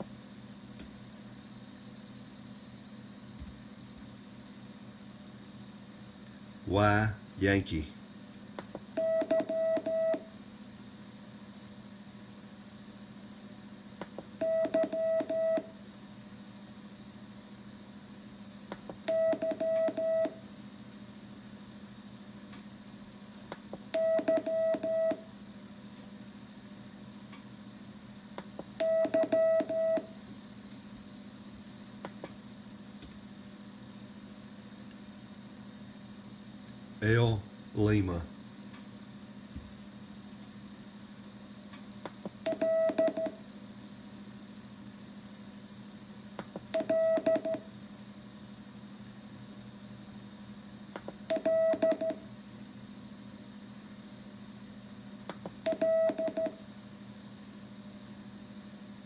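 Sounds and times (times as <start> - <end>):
faint steady hum: 0.0 - 59.0
morse code beeps: 9.0 - 10.2, 46.8 - 47.6, 55.7 - 56.5.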